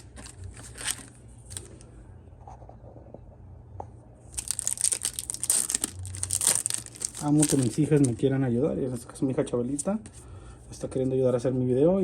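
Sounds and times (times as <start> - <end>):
foil wrapper crinkling and tearing: 4.3 - 8.2.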